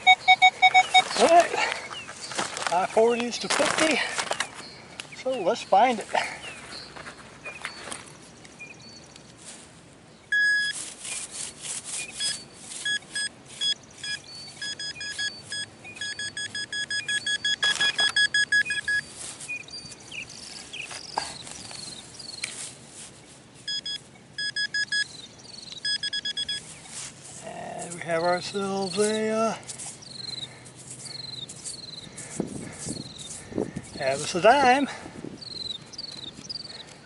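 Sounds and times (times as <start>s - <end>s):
metal detector beeping: 0.0s - 1.4s, 10.3s - 10.9s, 12.0s - 20.4s, 23.6s - 26.8s, 27.8s - 30.5s.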